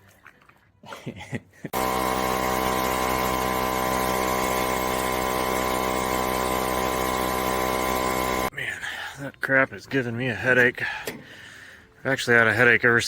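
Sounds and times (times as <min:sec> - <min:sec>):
machine motor whining: 0:01.8 - 0:08.5.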